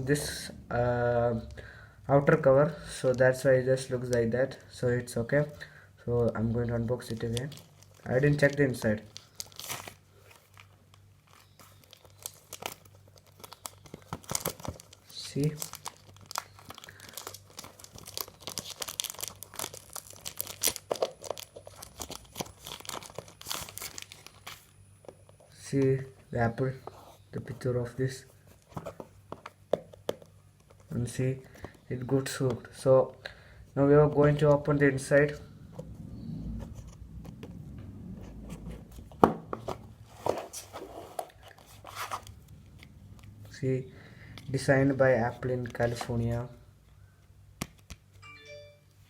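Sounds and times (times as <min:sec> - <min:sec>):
packaging crinkling and rustling: 0:06.2 - 0:25.4, 0:38.8 - 0:43.4.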